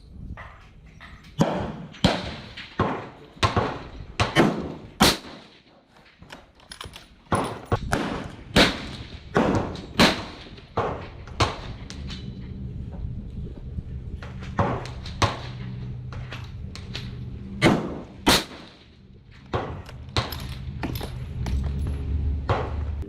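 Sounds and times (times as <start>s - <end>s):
gunshots with echo: 1.4s - 5.6s, 7.5s - 11.8s, 17.6s - 18.9s.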